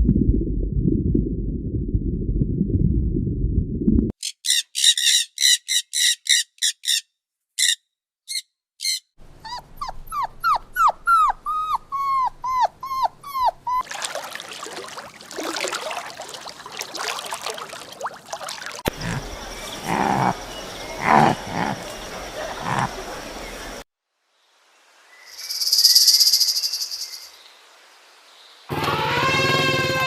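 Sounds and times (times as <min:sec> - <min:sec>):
puppy yipping: 0:08.9 - 0:13.9
dog whimpering: 0:09.4 - 0:13.9, 0:19.0 - 0:19.2, 0:21.0 - 0:21.8, 0:22.5 - 0:22.9.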